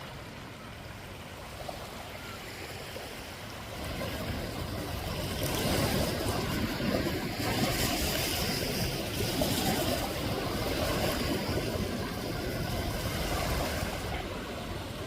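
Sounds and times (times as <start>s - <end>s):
waves at a beach: 0.0s - 15.0s
wind: 0.0s - 15.0s
wind buffeting microphone: 3.7s - 15.0s.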